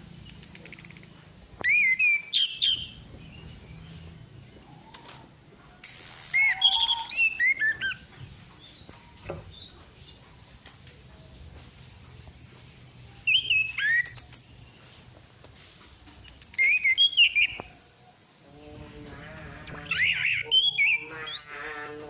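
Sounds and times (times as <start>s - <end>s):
thrush calling: 4.7s - 8.2s, 18.6s - 22.0s.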